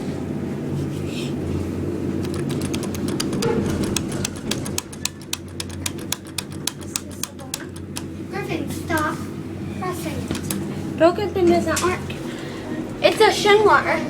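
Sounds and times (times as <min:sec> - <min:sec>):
elevator button clicking: 0:02.2 - 0:08.1.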